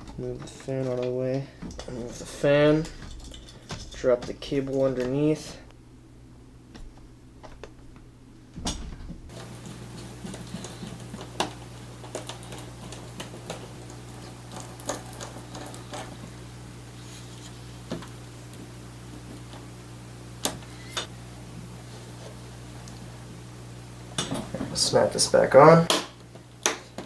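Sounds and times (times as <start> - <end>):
small parts clicking and tapping: 0.0 - 5.8, 9.3 - 16.3
low steady hum: 0.0 - 27.0.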